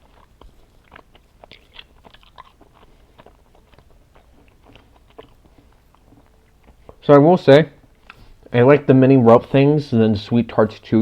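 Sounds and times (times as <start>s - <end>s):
chewing candy: 0.0s - 7.1s.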